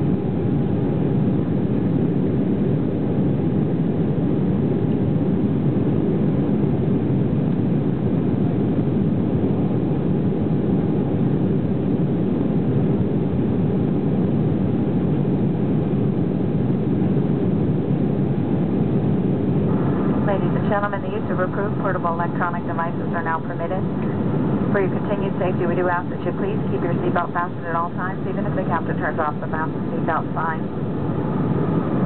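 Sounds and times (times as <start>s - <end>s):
faint steady whine: 0.0s - 32.0s
jet engines roaring in cabin: 0.0s - 32.0s.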